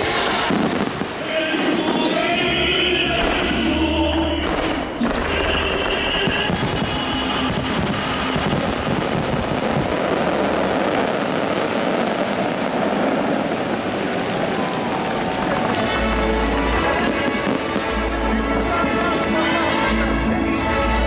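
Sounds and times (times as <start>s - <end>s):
fireworks bangs and crackles: 0.0s - 21.0s
music: 2.2s - 9.4s, 15.4s - 21.0s.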